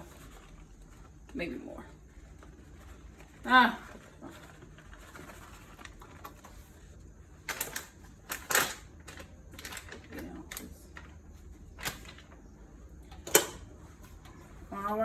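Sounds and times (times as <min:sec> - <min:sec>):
kitchen knocks and clicks: 0:13.0 - 0:14.4.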